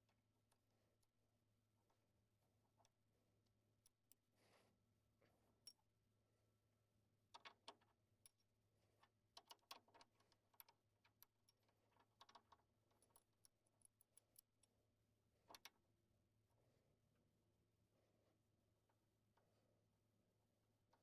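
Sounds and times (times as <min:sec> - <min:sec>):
faint metallic clicks and taps: 0:07.3 - 0:14.7.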